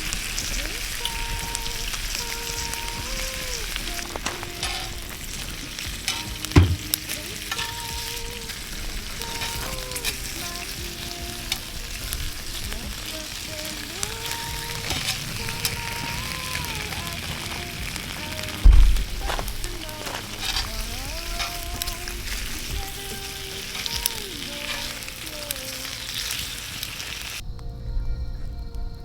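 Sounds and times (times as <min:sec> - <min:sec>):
log stove crackling and sizzling: 0:00.0 - 0:27.8
heavy knock: 0:05.9 - 0:07.0.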